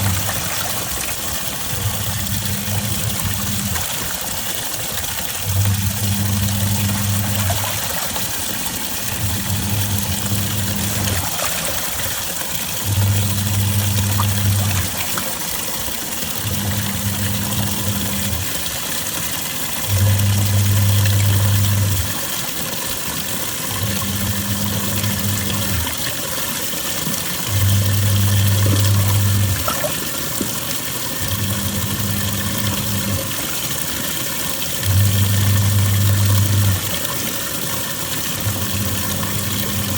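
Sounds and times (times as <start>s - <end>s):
water sloshing: 0.0s - 18.7s
washing machine motor humming: 0.0s - 39.9s.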